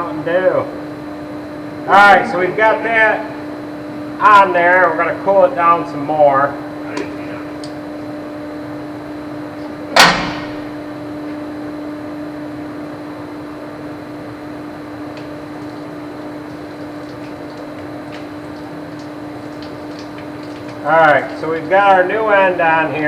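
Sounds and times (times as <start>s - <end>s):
low steady hum: 0.0s - 23.0s
sharp loud knock: 10.0s - 10.6s.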